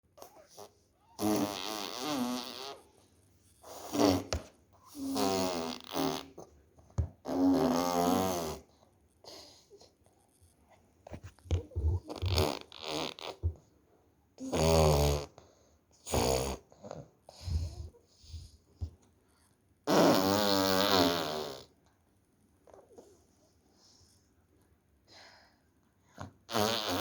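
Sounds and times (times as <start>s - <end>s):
toddler making fart noises: 0.2s - 2.9s, 3.6s - 6.5s, 7.2s - 8.7s, 11.5s - 13.5s, 14.4s - 15.3s, 16.1s - 16.6s, 19.9s - 21.7s, 26.5s - 27.0s
toddler blowing raspberries: 3.6s - 6.4s, 11.5s - 13.5s.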